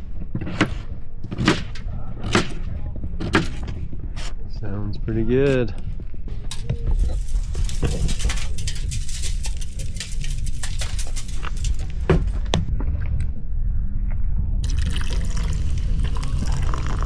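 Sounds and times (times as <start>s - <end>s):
sharp crackles: 6.8s - 12.4s
liquid pouring and splashing: 14.6s - 17.0s.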